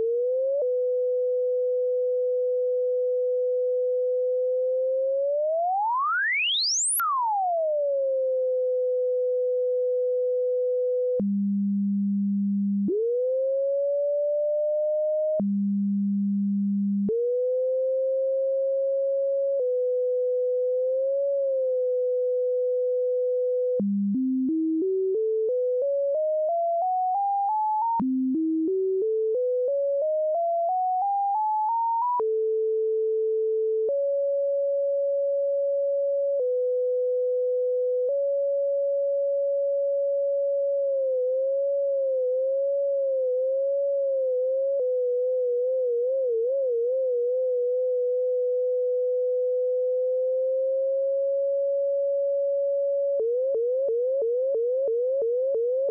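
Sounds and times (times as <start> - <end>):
sine tone gliding in pitch: 0.0 - 55.9.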